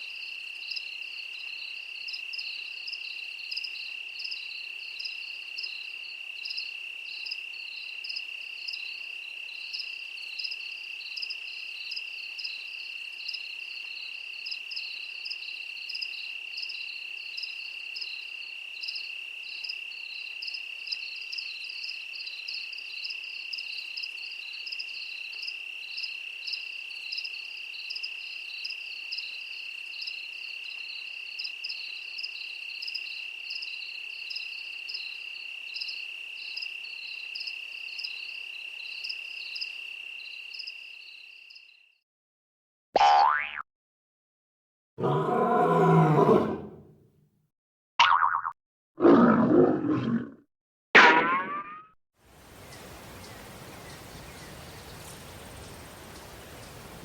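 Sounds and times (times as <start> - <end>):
crickets trilling: 1.6 - 41.8, 52.3 - 57.0
insect short chirps: 52.3 - 57.0.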